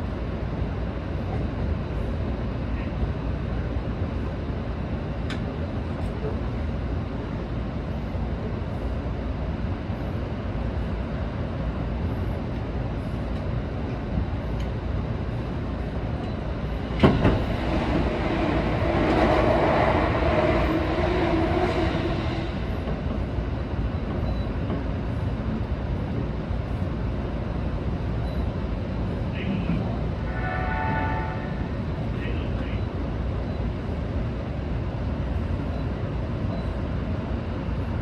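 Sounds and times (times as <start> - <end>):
train wheels rumbling on track: 0.0 - 38.0.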